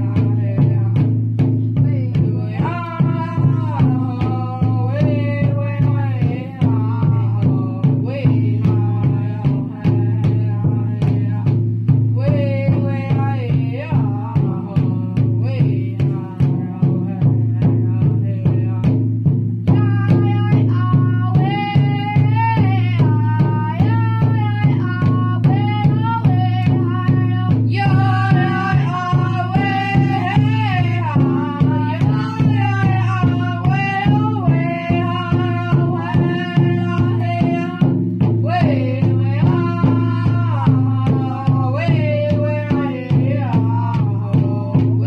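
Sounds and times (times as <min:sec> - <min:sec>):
steady drumbeat: 0:00.0 - 0:45.0
person singing: 0:01.8 - 0:11.5, 0:19.7 - 0:45.0.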